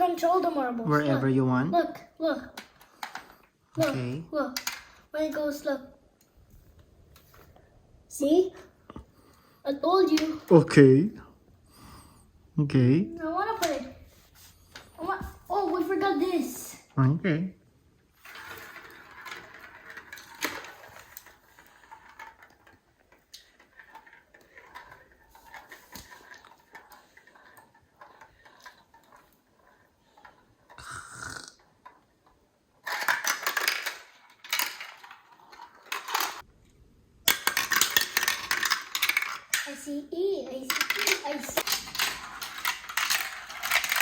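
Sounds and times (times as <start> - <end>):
marbles clicking and rattling: 18.2 - 32.0, 32.8 - 36.5, 37.3 - 39.9, 40.5 - 44.0.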